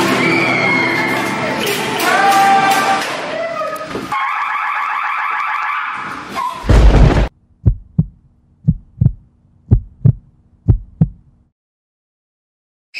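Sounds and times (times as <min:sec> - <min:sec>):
loud low thud: 0:06.7 - 0:08.1
heartbeat double thumps: 0:06.7 - 0:11.3.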